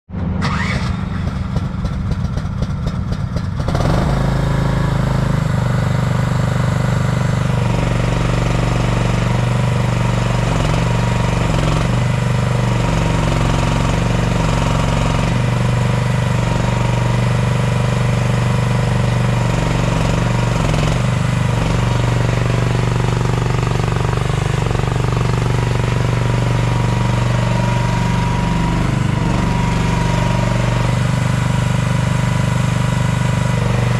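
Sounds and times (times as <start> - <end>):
excavator engine starting and idling: 0.1 - 33.9.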